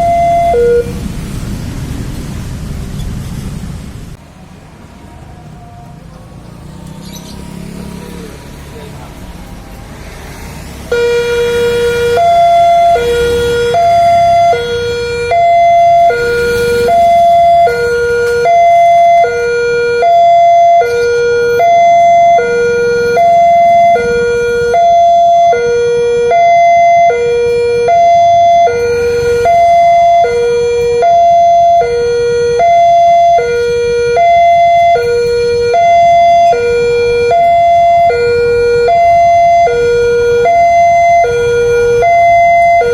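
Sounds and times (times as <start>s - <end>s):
two-tone level crossing siren: 0.0s - 1.0s, 9.6s - 42.9s.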